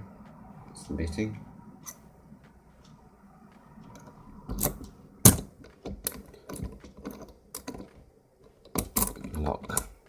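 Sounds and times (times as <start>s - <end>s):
metallic clicks and knocks of lock: 4.5s - 7.9s, 8.6s - 10.0s.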